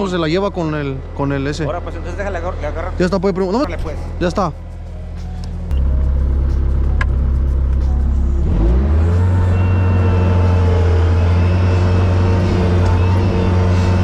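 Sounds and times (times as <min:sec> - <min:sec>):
vehicle engine revving: 0:05.6 - 0:14.0.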